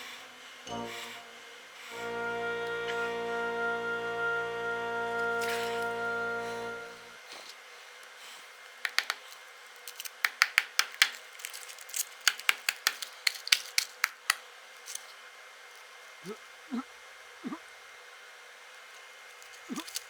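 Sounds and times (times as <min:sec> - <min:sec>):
background music: 0:00.0 - 0:07.3
small hard objects clicking: 0:08.0 - 0:15.2, 0:19.3 - 0:20.0.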